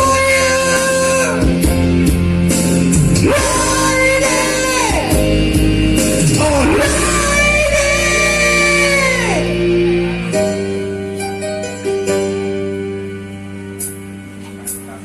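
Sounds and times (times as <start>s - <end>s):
sustained guitar and bass: 0.0s - 15.0s.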